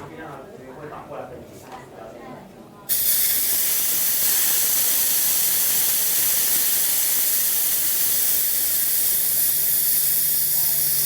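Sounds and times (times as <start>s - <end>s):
compressed air hissing: 2.9s - 11.0s.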